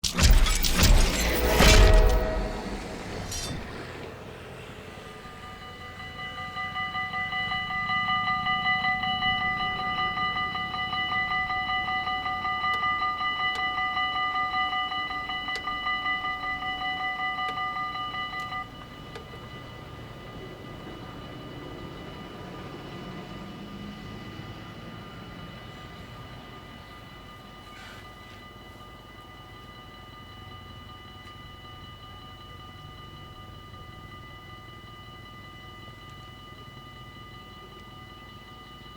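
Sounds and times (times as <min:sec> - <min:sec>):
sharp clicks: 0:00.0 - 0:04.1
low rumble: 0:00.0 - 0:05.7
level crossing bell ringing: 0:00.7 - 0:38.9.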